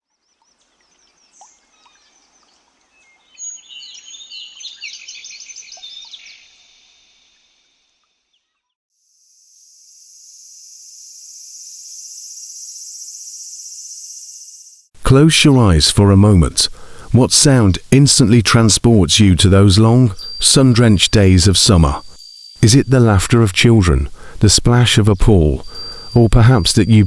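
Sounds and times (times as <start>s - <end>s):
birds chirping and singing: 0.1s - 7.4s, 19.8s - 22.2s, 24.7s - 27.0s
high-pitched cicada buzz: 8.9s - 14.9s, 20.1s - 23.4s, 24.1s - 27.0s.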